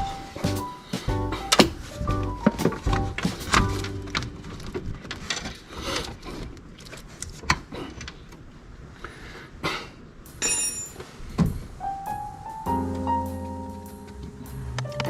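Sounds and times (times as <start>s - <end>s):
metallic clink: 10.3s - 11.0s.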